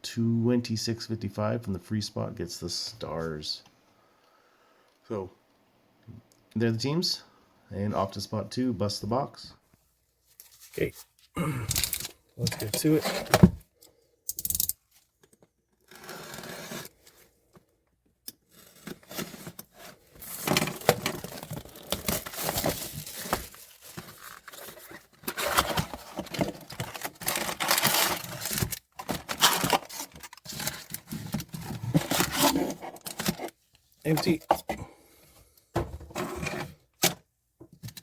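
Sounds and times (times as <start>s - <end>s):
plastic wrap and cardboard tearing: 18.4s - 33.5s
packs rustling: 18.8s - 34.4s
packaging crinkling: 20.2s - 33.5s.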